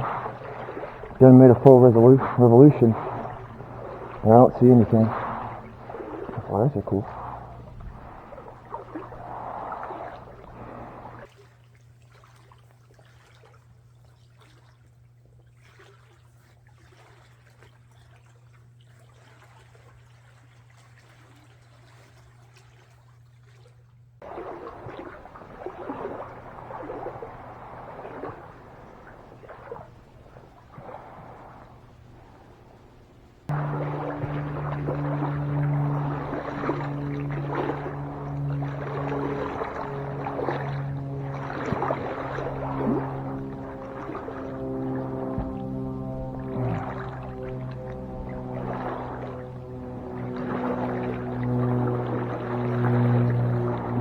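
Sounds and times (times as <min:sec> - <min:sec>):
boots sloshing through water: 0:00.0 - 0:11.3, 0:24.2 - 0:54.0
faint low hum: 0:00.0 - 0:11.3, 0:24.2 - 0:54.0.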